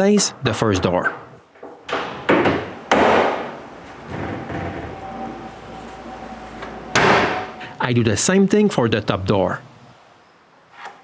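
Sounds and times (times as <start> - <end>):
cabinet door thudding: 1.9 - 3.6, 7.0 - 7.5.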